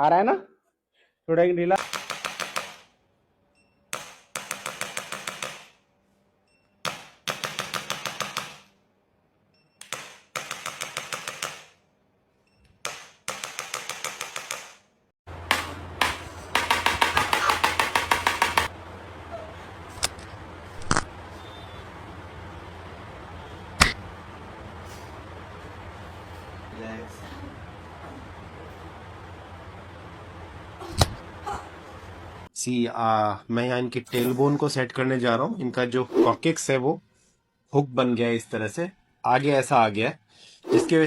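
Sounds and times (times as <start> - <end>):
low steady hum: 18.3 - 32.5.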